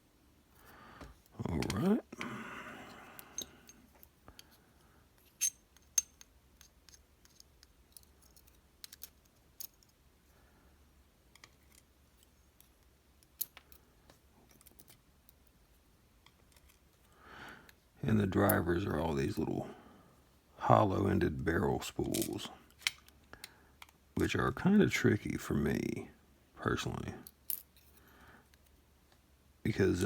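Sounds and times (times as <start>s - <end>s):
metallic clicks of lock parts: 3.2s - 4.5s, 5.2s - 10.0s, 11.3s - 13.8s, 22.0s - 24.0s.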